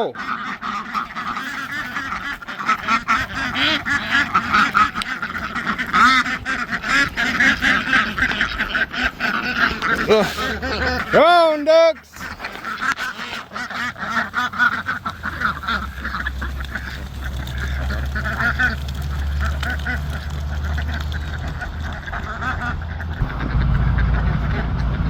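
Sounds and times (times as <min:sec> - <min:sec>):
ducks quacking: 0:00.0 - 0:25.0
low rumble: 0:14.0 - 0:25.0.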